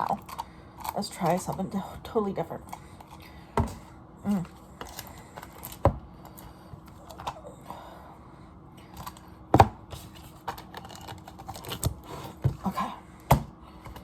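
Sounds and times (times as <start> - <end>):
packaging clicking and rustling: 10.0 - 12.6.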